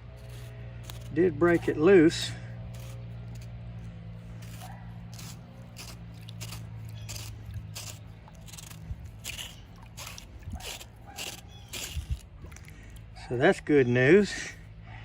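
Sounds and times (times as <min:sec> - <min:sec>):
pipe wrench scraping: 0:00.0 - 0:12.2
truck engine humming: 0:00.0 - 0:15.0.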